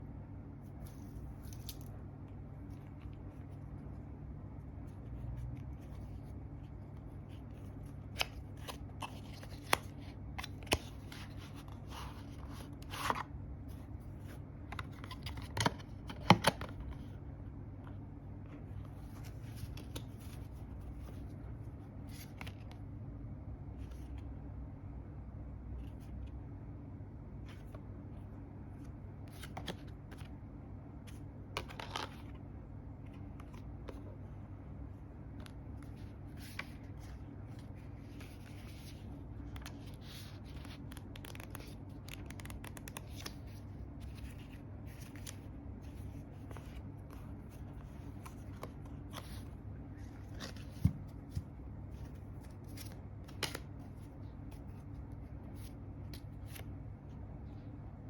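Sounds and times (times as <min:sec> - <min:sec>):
low steady hum: 0:00.0 - 0:58.0
cards rustling and clicking: 0:00.7 - 0:04.0, 0:04.8 - 0:17.2, 0:18.5 - 0:21.4, 0:31.1 - 0:34.2, 0:35.2 - 0:56.8.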